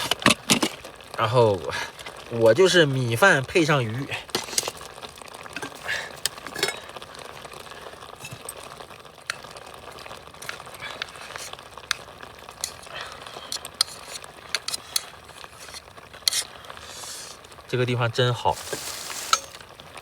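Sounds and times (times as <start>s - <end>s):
faint hiss: 10.4s - 20.0s
utensils tapping a bowl: 12.6s - 12.9s, 19.2s - 19.6s.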